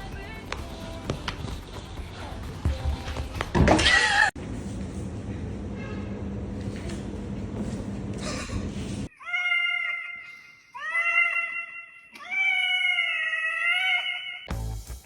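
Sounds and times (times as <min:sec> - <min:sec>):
cat meowing: 0:09.1 - 0:14.5.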